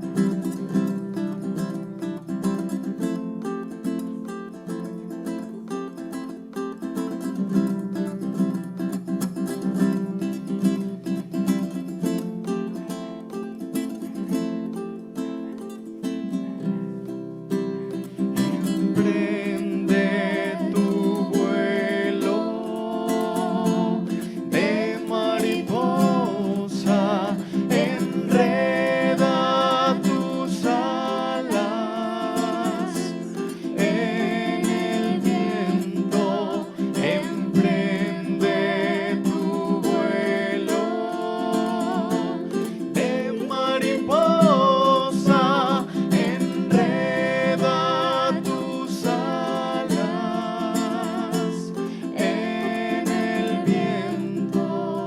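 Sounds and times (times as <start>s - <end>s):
strummed acoustic guitar: 0.0s - 55.0s
person singing with vibrato: 18.1s - 55.0s.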